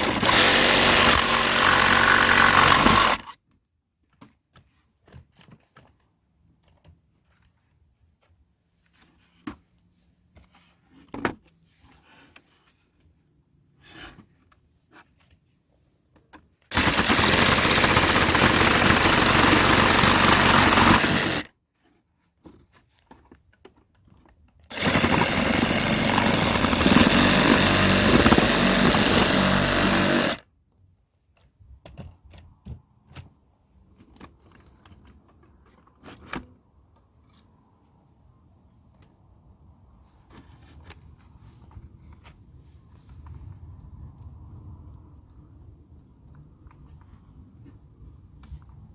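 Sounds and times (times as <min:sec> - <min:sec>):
loud steady machine noise: 0:00.0 - 0:03.2, 0:16.7 - 0:21.5, 0:24.7 - 0:30.4.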